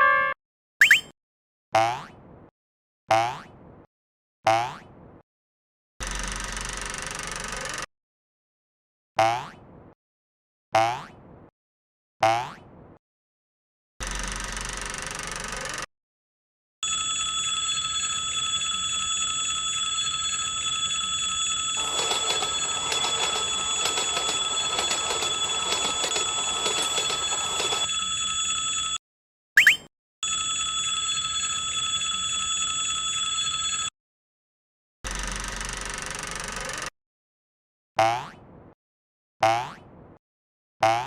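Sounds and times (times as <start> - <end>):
level-crossing alarm bell ringing: 16.8 - 29.0, 30.2 - 33.9.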